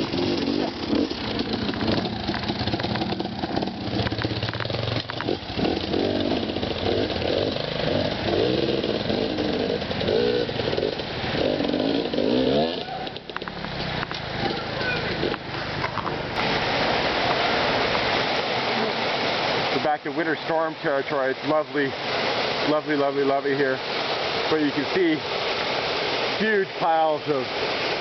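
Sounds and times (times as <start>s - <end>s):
dirt bike engine revving: 0.0s - 17.9s.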